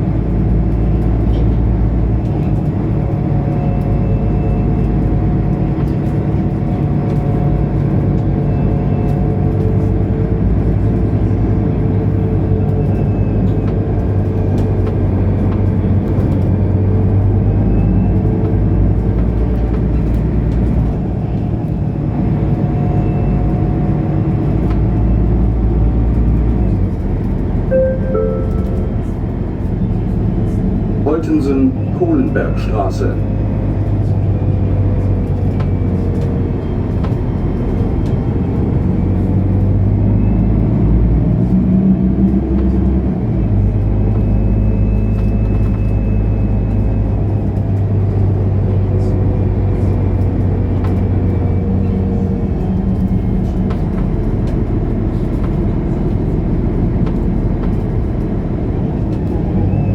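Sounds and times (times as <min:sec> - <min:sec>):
bus diesel engine running: 0:00.0 - 0:59.9
two-note falling gong: 0:27.7 - 0:29.5.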